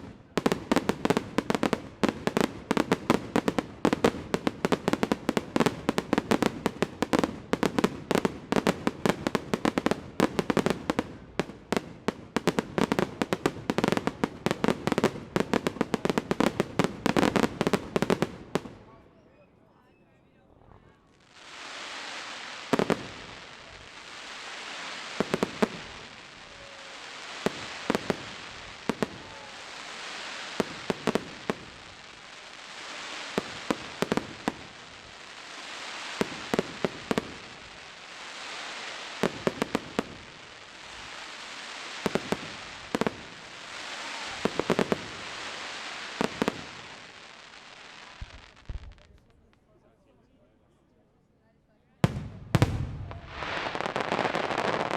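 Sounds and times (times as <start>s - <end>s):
fireworks bangs: 0.0s - 18.8s, 21.2s - 49.4s, 52.0s - 54.9s
fireworks hiss: 21.2s - 49.1s, 52.1s - 54.9s.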